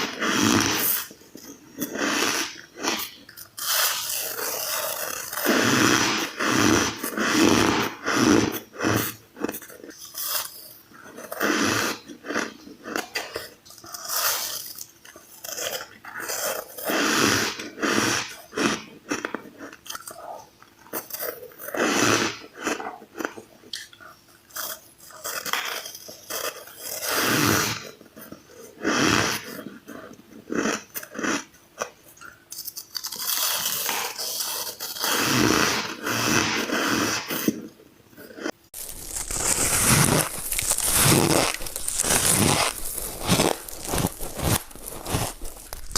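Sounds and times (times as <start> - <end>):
ice being crunched: 38.8 - 45.9.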